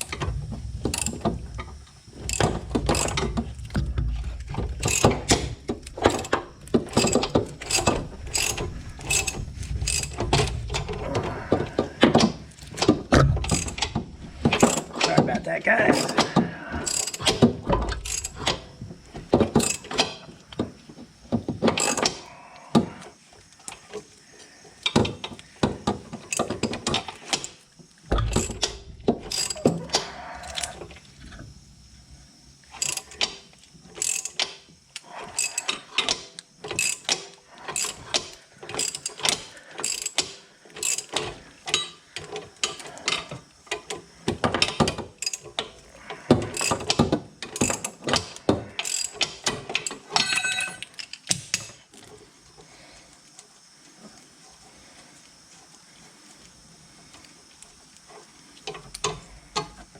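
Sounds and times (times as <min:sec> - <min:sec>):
ratcheting wrench clicking: 0:00.8 - 0:03.8, 0:04.4 - 0:11.0, 0:12.2 - 0:15.2, 0:16.0 - 0:18.6, 0:19.6 - 0:20.2, 0:28.2 - 0:30.7, 0:32.7 - 0:44.0, 0:44.6 - 0:45.7, 0:46.5 - 0:51.7
metal clinks: 0:50.1 - 0:51.1.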